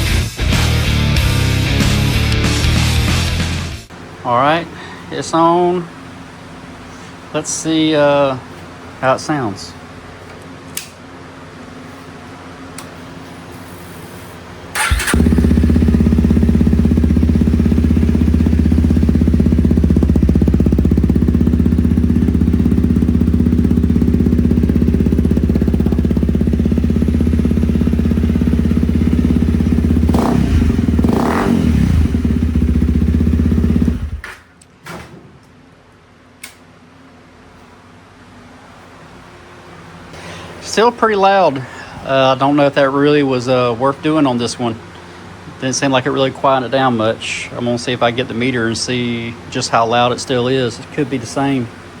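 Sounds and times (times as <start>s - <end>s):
motorcycle engine starting and idling: 14.7s - 34.2s.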